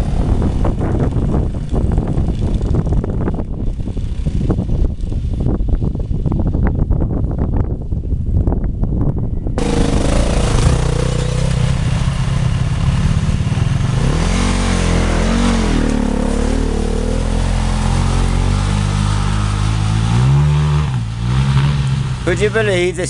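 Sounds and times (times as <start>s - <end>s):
steady microphone noise: 0.0s - 23.0s
motorcycle engine revving: 9.6s - 23.0s.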